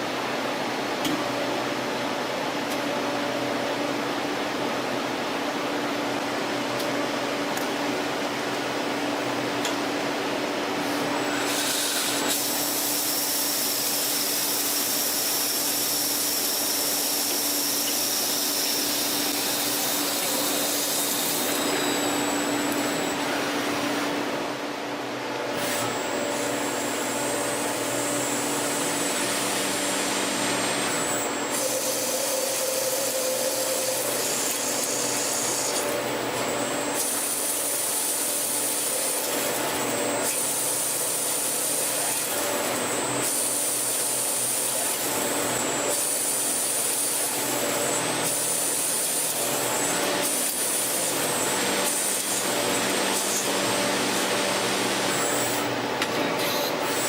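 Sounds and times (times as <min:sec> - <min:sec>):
lathe cutting and scraping: 0:11.2 - 0:23.8, 0:40.3 - 0:57.0.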